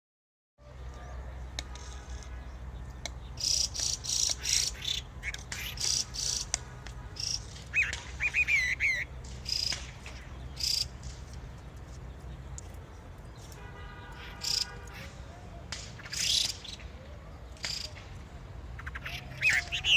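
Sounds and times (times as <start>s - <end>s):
songbirds chirping: 0.6s - 19.9s
bird warbling: 3.4s - 6.6s, 7.2s - 10.9s, 18.7s - 19.9s.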